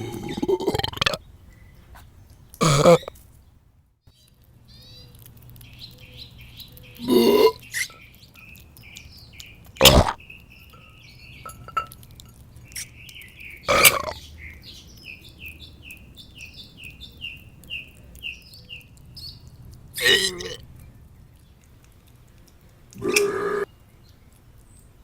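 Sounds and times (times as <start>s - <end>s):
loud burps: 0.0s - 1.2s, 2.6s - 3.1s, 7.0s - 7.6s, 9.8s - 10.2s, 13.7s - 14.2s, 20.0s - 20.6s, 23.0s - 23.7s
birds chirping: 0.0s - 3.6s, 4.2s - 22.0s.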